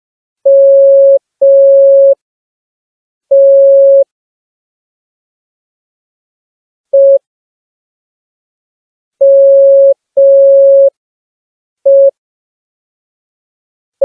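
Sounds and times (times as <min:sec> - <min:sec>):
morse code beeps: 0:00.5 - 0:02.2, 0:03.3 - 0:04.0, 0:07.0 - 0:07.2, 0:09.2 - 0:10.9, 0:11.9 - 0:12.1.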